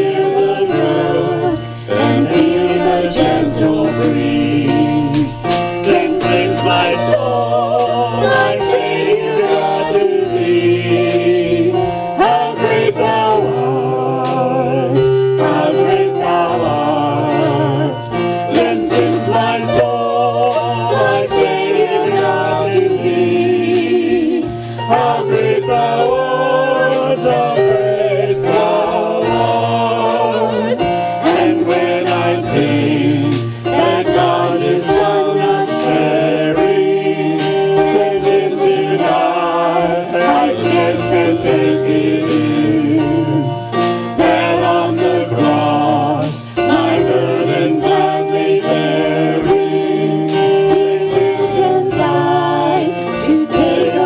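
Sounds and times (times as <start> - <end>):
group singing a worship song: 0.0 - 54.0
instrumental accompaniment with beat: 0.0 - 54.0.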